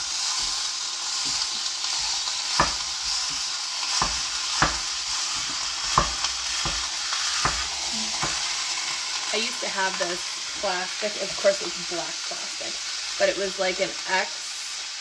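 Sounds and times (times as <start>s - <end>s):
meat sizzling in a frying pan: 0.0s - 15.0s
wooden spatula knocking on pan: 1.2s - 8.5s.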